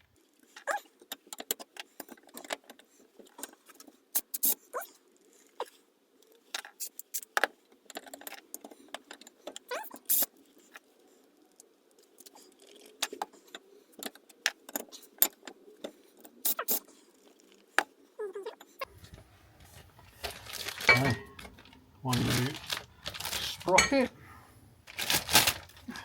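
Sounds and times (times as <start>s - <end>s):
loose nuts being handled: 18.8s - 26.0s.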